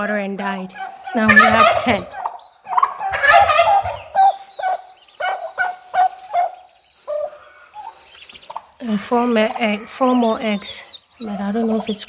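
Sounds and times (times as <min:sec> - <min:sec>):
turkey gobbling: 0:00.0 - 0:07.9
turkey clucking calls: 0:00.0 - 0:10.6.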